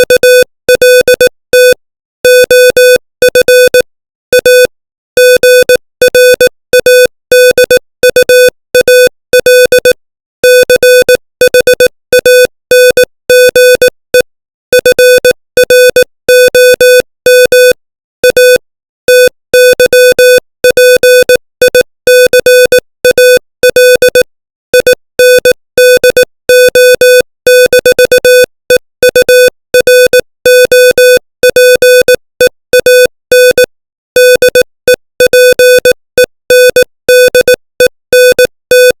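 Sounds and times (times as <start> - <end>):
morse code beeps: 0.0 - 3.8, 4.4 - 14.2, 14.8 - 39.0.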